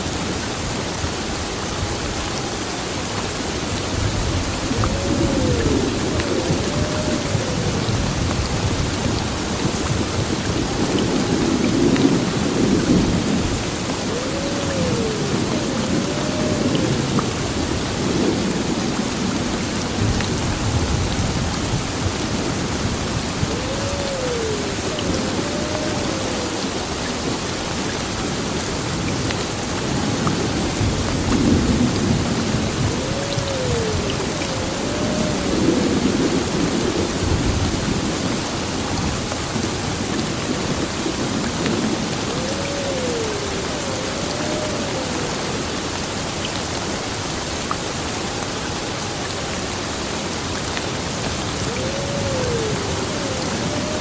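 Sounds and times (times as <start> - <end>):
heavy rain: 0.0 - 54.0
low rolling thunder: 3.9 - 45.7, 51.3 - 54.0.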